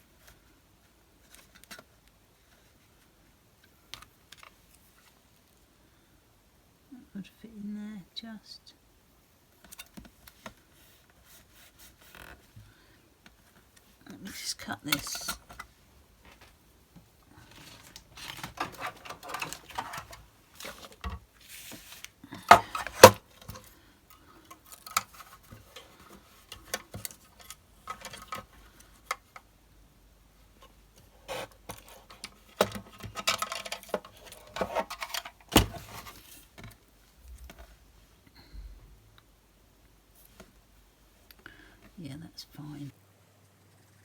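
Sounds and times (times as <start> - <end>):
paper rustling: 17.3 - 23.6.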